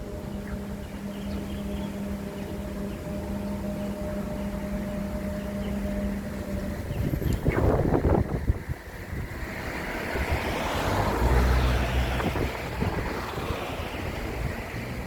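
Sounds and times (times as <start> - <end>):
wind rumbling over microphone: 6.3 - 15.0.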